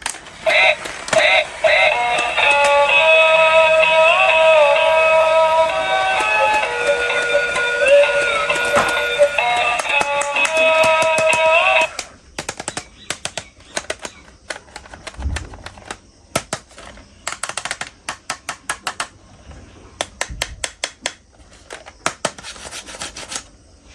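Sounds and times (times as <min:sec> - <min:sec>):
music: 0:00.4 - 0:12.1
hard objects clicking and clacking: 0:06.1 - 0:19.1.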